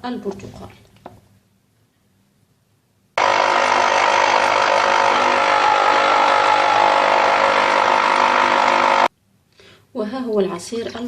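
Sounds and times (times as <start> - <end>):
electric juicer motor running: 3.2 - 9.1.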